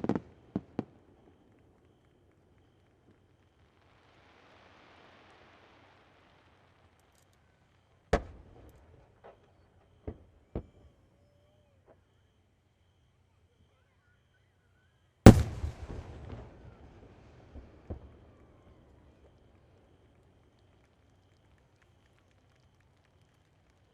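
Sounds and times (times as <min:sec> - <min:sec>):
fireworks crackles: 0:00.0 - 0:10.7, 0:15.3 - 0:23.9
fireworks bursting in sharp bangs: 0:15.3 - 0:18.8.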